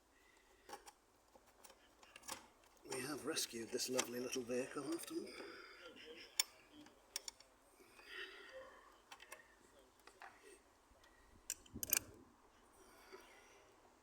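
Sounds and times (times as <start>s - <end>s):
spanner clinking on metal nut: 11.5s - 12.1s.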